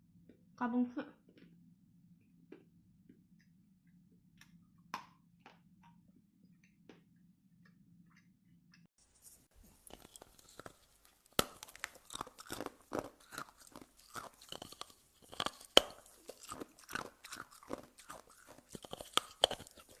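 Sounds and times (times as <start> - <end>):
crunching ice chews: 9.6 - 20.0
ice cracking between teeth: 9.8 - 20.0.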